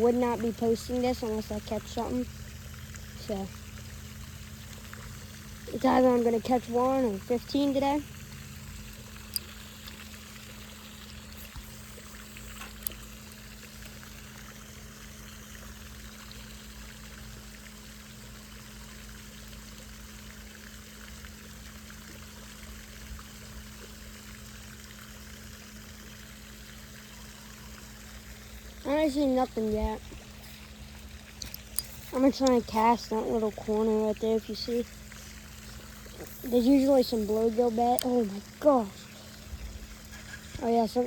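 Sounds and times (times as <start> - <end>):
low hum: 0.0 - 41.0
water trickling: 0.0 - 41.0
small clicks: 31.4 - 32.6.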